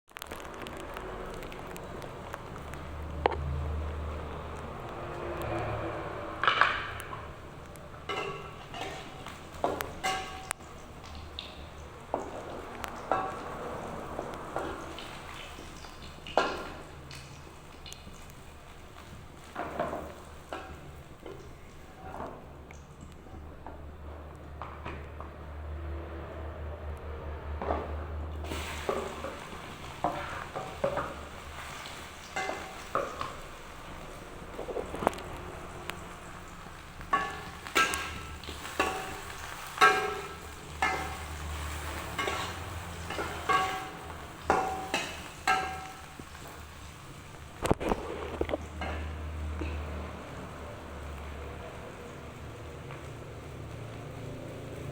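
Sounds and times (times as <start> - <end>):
food sizzling in a pan: 1.1 - 22.5, 28.4 - 54.9
kitchenware scrape: 5.7 - 10.8, 27.7 - 36.2, 36.8 - 50.0
utensils clinking against dishes: 6.4 - 14.0, 28.4 - 35.0, 36.7 - 47.1.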